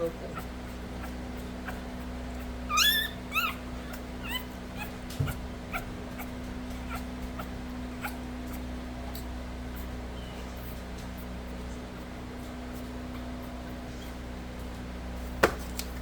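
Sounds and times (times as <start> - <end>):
steady low hum: 0.0 - 16.0
puppy squealing: 0.2 - 10.7.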